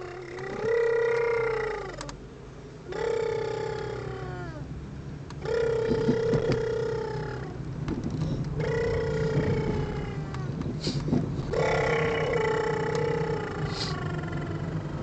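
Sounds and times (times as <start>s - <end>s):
low steady hum: 0.0s - 15.0s
baby crying: 11.5s - 14.7s.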